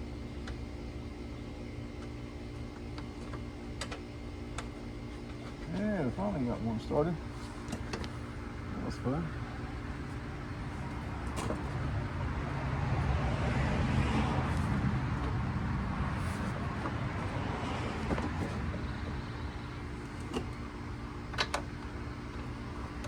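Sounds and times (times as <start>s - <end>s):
vehicle passing road rumble: 10.8s - 19.6s.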